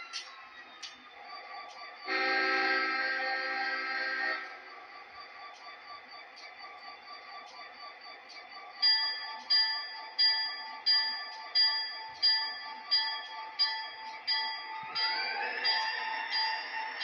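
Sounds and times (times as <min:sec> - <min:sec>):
model locomotive bell ringing: 0:02.0 - 0:06.0, 0:08.4 - 0:17.0.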